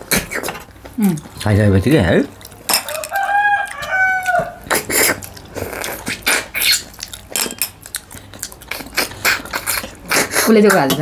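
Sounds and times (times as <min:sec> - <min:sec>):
chewing: 0:02.2 - 0:10.9
spoon clinking against plate: 0:07.3 - 0:07.8, 0:10.7 - 0:11.0.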